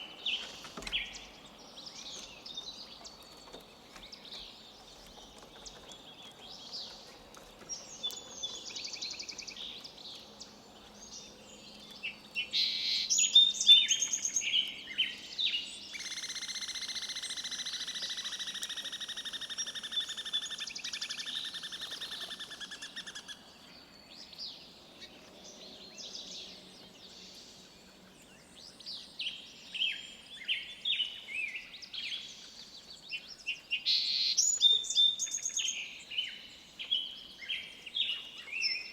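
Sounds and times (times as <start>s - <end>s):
birds chirping and whistling: 11.4s - 23.3s.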